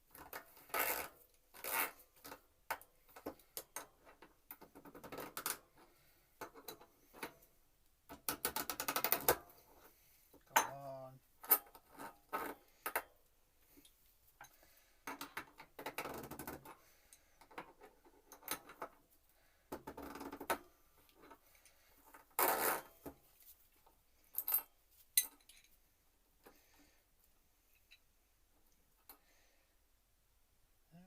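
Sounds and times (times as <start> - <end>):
metal bike parts and tools clinking: 24.4 - 25.8.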